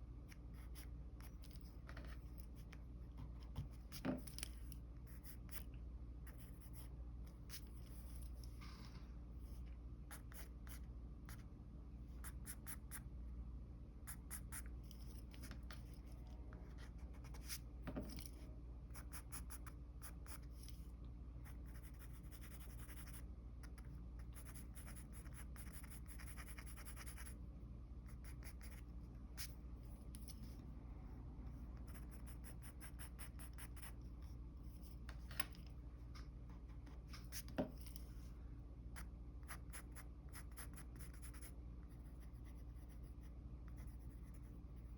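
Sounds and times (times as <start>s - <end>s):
faint low hum: 0.0s - 44.9s
pencil scratching on paper: 24.3s - 27.4s, 39.0s - 44.9s.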